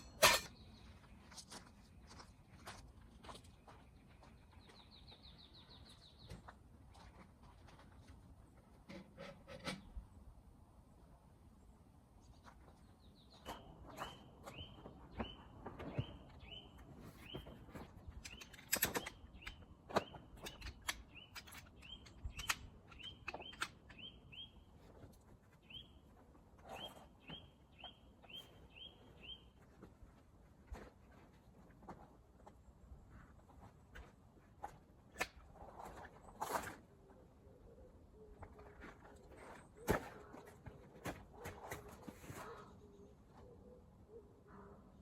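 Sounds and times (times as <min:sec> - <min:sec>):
handling clicks and knocks: 0:17.3 - 0:24.2
bird calling with sharp notes: 0:18.2 - 0:24.7.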